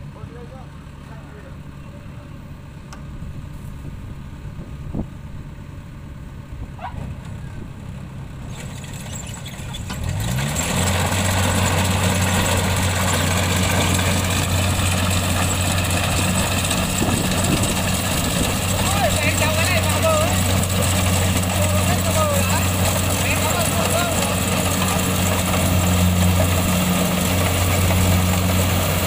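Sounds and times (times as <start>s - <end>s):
diesel engine revving: 0.0s - 29.0s
harvester rushing mechanical noise: 6.4s - 29.0s.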